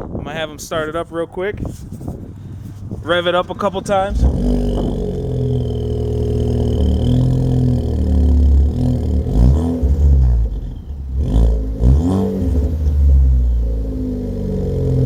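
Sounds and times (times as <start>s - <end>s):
car engine revving: 3.6s - 15.0s.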